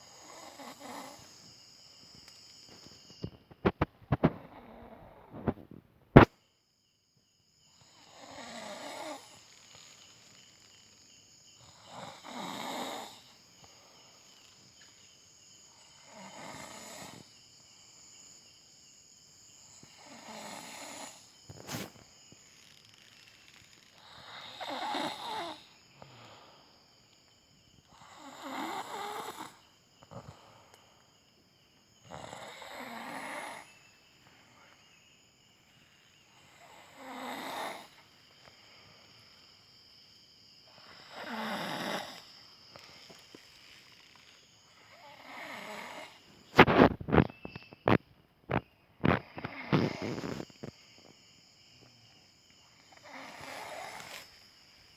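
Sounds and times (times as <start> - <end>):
person snoring: 0.2 - 1.3, 11.8 - 13.3, 20.0 - 21.8, 24.0 - 26.2, 28.0 - 30.4, 32.1 - 33.6, 36.6 - 38.0, 40.8 - 42.3, 44.9 - 46.2, 49.2 - 50.5, 52.9 - 54.2.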